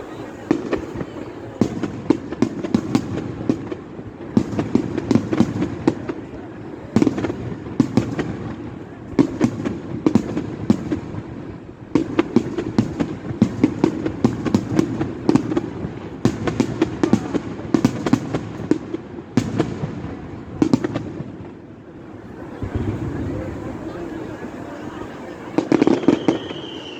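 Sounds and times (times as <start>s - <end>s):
fireworks bangs and crackles: 0.0s - 26.9s.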